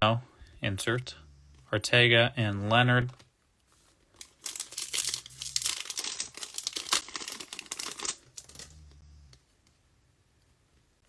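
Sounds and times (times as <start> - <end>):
foil wrapper crinkling: 3.7 - 8.7.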